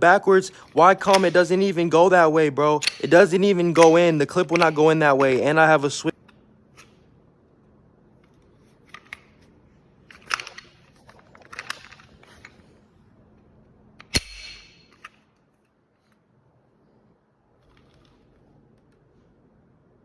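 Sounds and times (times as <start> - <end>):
plastic parts clicking: 2.8 - 5.7, 10.1 - 12.6.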